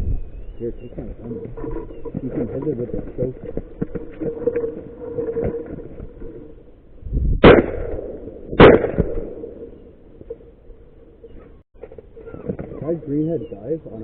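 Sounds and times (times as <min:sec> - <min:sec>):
shotgun blasts with echo: 0:07.4 - 0:09.9.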